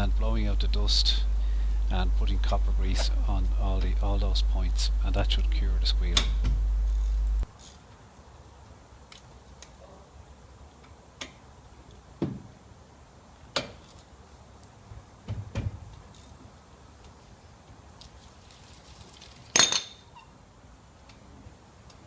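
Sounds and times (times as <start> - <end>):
low rumble: 0.0 - 7.5.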